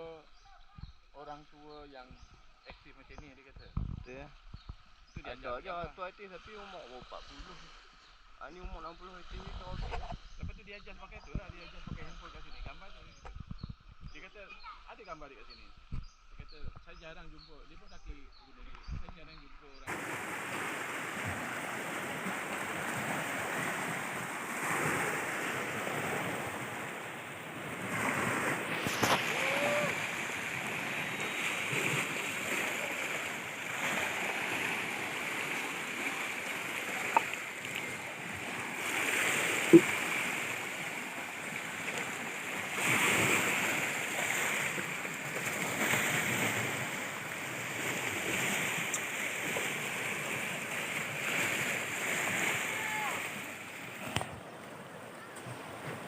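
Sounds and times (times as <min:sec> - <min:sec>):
sea waves washing in: 0:19.9 - 0:56.0.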